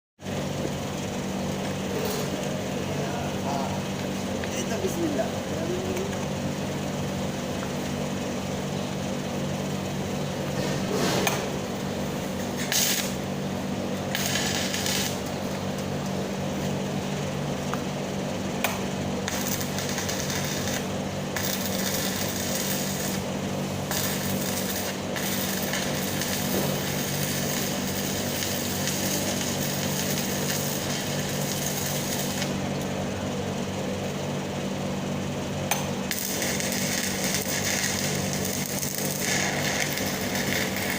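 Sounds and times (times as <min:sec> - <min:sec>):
welding arc crackling: 0:11.6 - 0:17.0, 0:18.6 - 0:33.1, 0:35.7 - 0:40.9.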